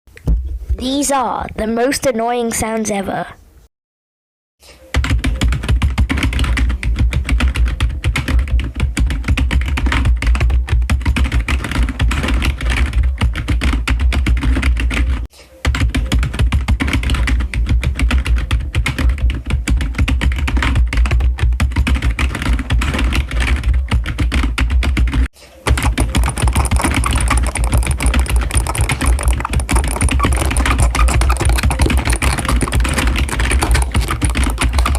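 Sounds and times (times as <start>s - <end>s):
rapid dense clicking: 16.8s - 34.9s.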